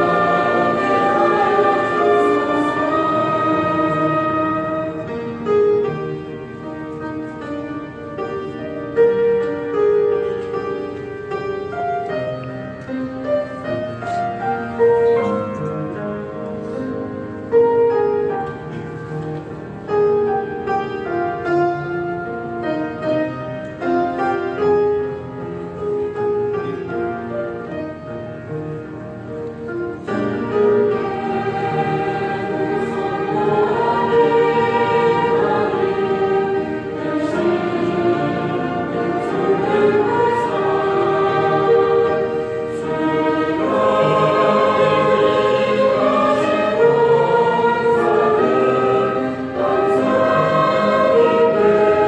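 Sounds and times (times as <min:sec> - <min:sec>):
choir singing: 0:00.0 - 0:06.3, 0:30.0 - 0:52.0
piano accompaniment: 0:00.0 - 0:52.0.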